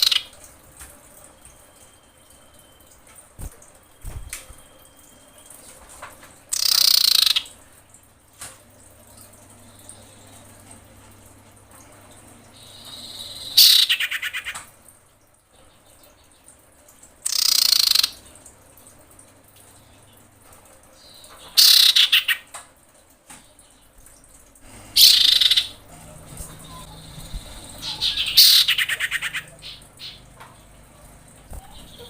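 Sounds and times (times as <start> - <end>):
bird harsh calls: 0.0 - 0.3, 12.6 - 14.6, 21.6 - 22.4, 24.9 - 25.8, 26.6 - 30.3.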